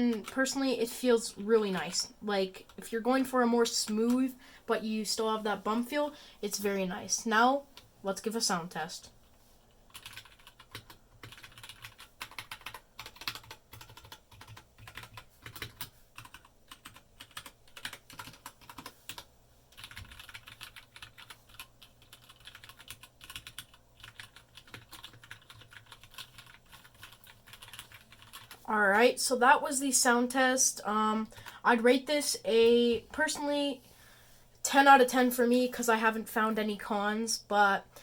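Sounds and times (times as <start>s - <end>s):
mechanical keyboard typing: 9.9s - 28.6s.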